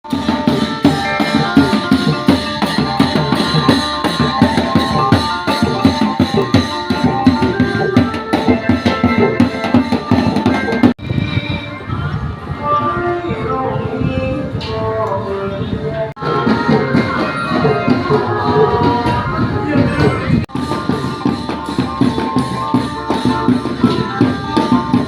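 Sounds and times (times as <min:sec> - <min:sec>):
music with quick drum beat: 0:00.0 - 0:11.0, 0:16.2 - 0:25.0.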